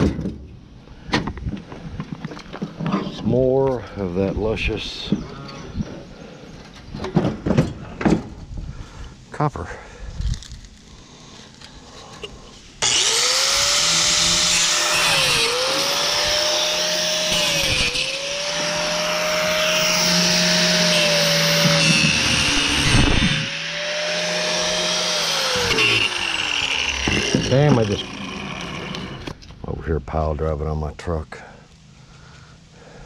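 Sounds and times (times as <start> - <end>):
electric power tool motor whine: 11.6 - 29.4.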